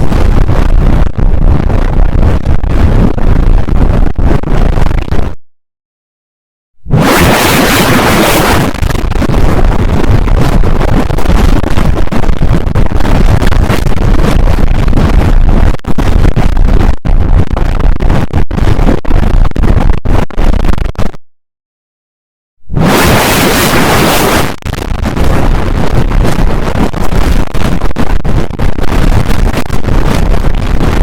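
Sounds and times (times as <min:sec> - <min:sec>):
harsh distorted alert noise: 0:06.9 - 0:21.2, 0:22.8 - 0:31.0.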